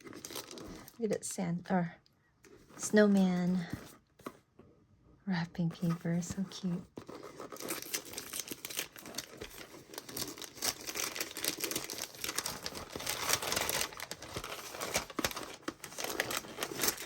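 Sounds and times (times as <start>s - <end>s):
wrapping paper tearing and crumpling: 0.0s - 1.0s, 7.0s - 17.0s.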